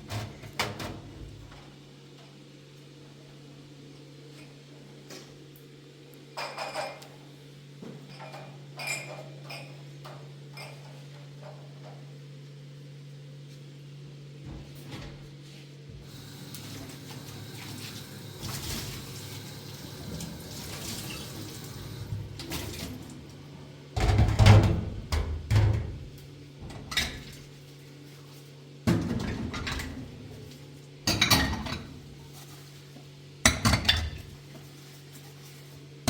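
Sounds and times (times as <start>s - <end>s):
dishes and pots clattering: 6.4s - 7.1s, 31.1s - 32.0s, 33.5s - 34.3s
water running softly: 16.0s - 24.0s.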